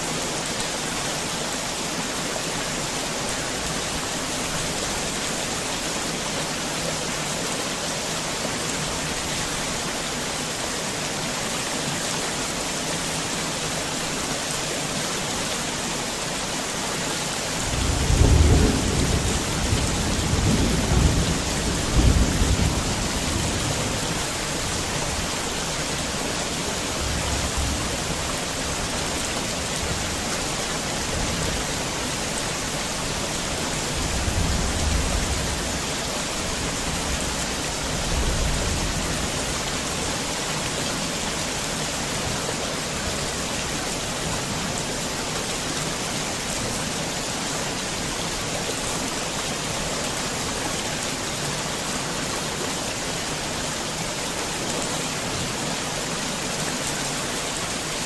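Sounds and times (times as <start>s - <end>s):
heavy rain falling: 0.0s - 58.0s
rolling thunder: 17.7s - 23.8s.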